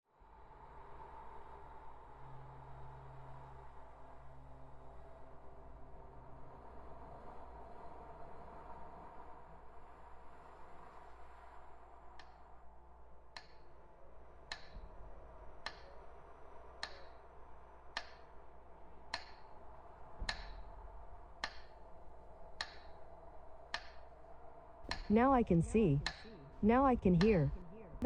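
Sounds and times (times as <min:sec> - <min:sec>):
faint steady hum: 0:00.2 - 0:28.0
clock ticking: 0:24.9 - 0:27.6.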